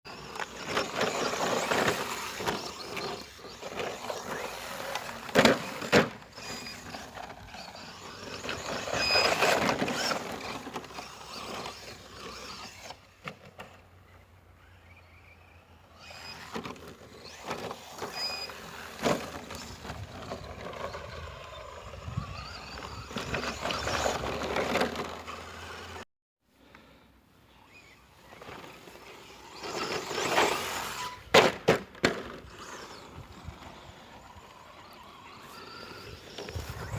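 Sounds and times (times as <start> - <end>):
rc truck motor and tyres: 0.1 - 36.9.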